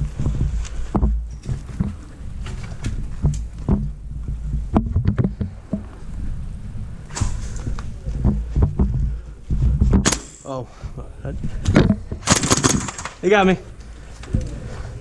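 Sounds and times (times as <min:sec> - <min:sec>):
sharp clicks and knocks: 0:00.0 - 0:06.0.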